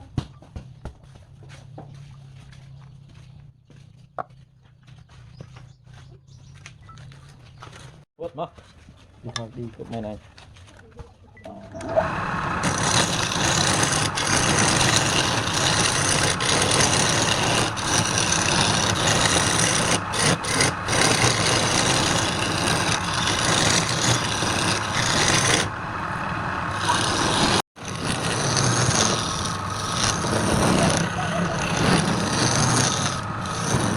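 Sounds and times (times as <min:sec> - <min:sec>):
lathe motor hum: 0:11.8 - 0:33.9
wood scraping on lathe: 0:11.8 - 0:33.9.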